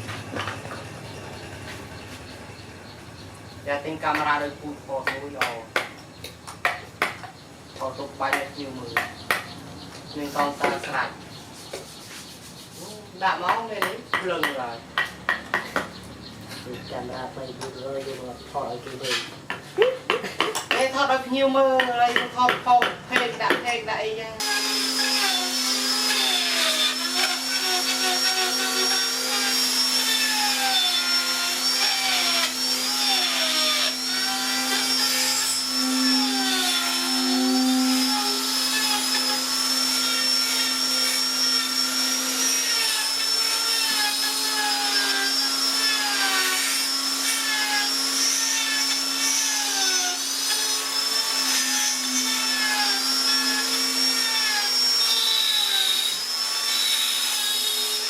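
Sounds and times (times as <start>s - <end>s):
power tool cutting wood: 10.1s - 11.1s, 22.7s - 58.0s.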